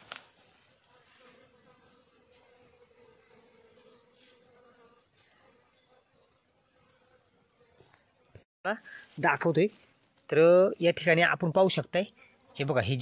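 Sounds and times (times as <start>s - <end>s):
insect chirring: 0.0s - 8.5s.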